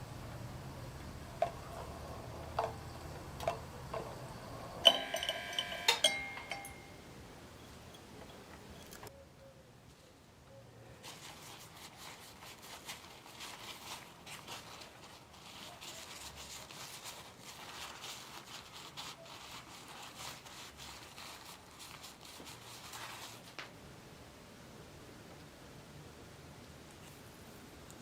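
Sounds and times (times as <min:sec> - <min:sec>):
scrubbing on a hard surface: 0:11.0 - 0:23.6.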